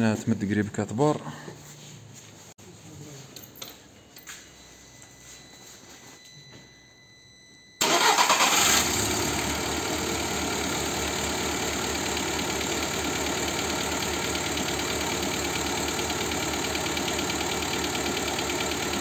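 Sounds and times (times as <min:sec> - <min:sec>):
car engine starting and idling: 0:07.8 - 0:19.0.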